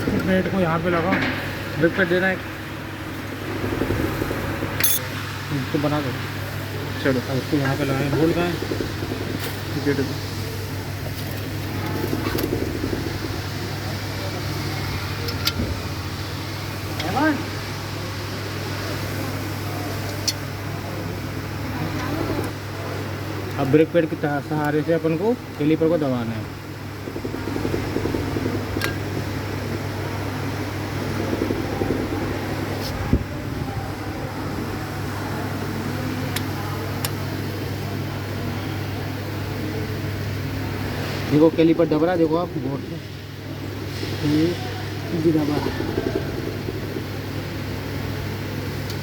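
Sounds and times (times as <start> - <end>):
low machine hum: 0.0 - 49.0
metallic clicks and clatter of tools: 4.8 - 5.0.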